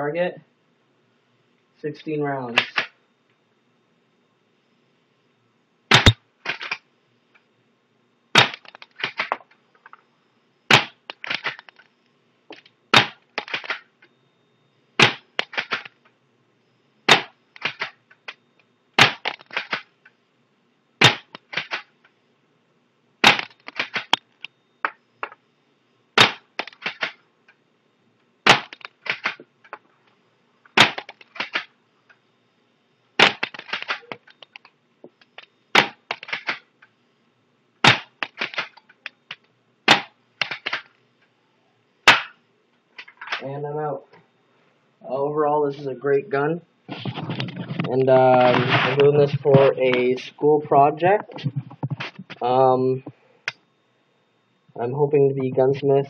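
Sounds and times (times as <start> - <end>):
airsoft pistol shot snap: 5.9 - 6.8, 8.4 - 9.3, 10.7 - 11.6, 12.9 - 13.8, 15.0 - 15.8, 17.1 - 17.9, 19.0 - 19.8, 21.0 - 21.8, 23.2 - 24.2, 26.2 - 27.2, 28.5 - 29.4, 30.8 - 31.6, 33.2 - 34.0, 35.8 - 36.6, 37.8 - 38.7, 39.9 - 40.8, 42.1 - 42.4.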